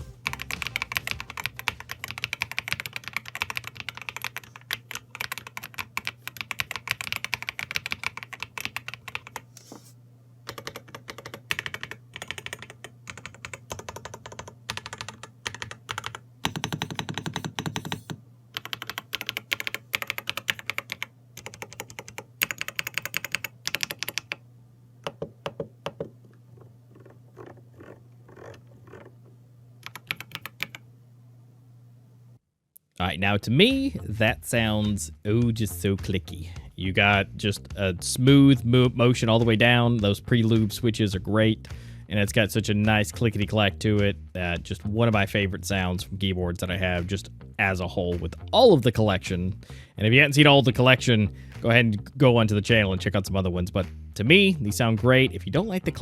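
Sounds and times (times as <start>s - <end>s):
mechanical keyboard typing: 0.0s - 9.5s, 10.5s - 24.4s, 27.0s - 29.1s, 29.8s - 30.8s.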